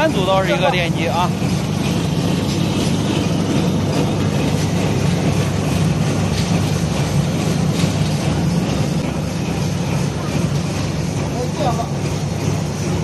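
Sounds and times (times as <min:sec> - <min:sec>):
meat-cutting machine motor hum: 0:00.0 - 0:13.0.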